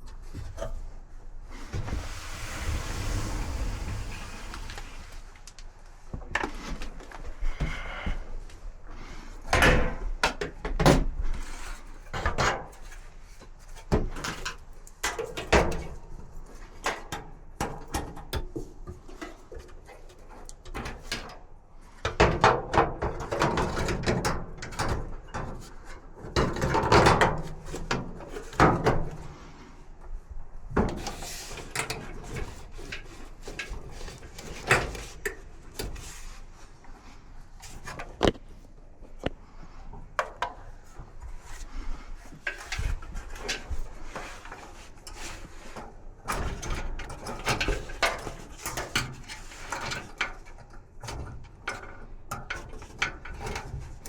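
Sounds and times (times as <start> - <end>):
dryer parts and tools clunking: 0.0 - 8.2.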